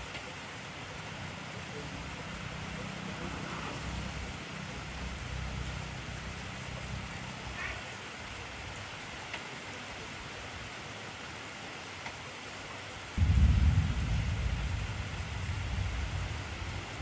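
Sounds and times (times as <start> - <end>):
faint raindrop ticks: 0.0 - 0.4, 9.2 - 9.5, 12.0 - 12.2
heavy rain hissing: 0.0 - 17.0
low rumble: 13.2 - 17.0.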